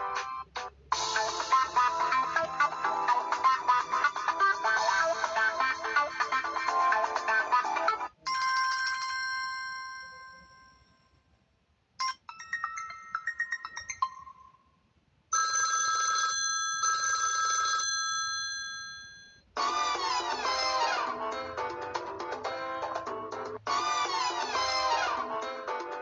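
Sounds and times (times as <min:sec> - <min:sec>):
melodic phone ringtone: 0:00.0 - 0:10.8, 0:12.0 - 0:14.5, 0:15.4 - 0:21.2.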